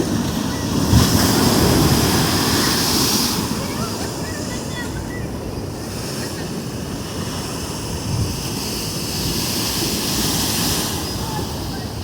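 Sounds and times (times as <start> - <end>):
surf washing onto shore: 0.0 - 12.0
wind buffeting microphone: 0.0 - 12.0.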